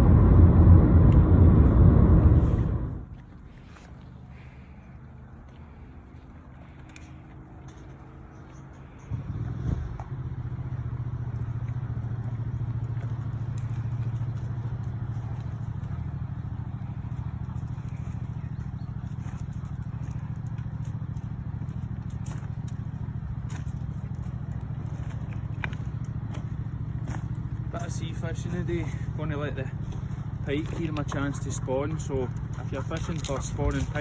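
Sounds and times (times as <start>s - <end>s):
engine starting and running: 0.0s - 5.9s, 8.1s - 34.0s.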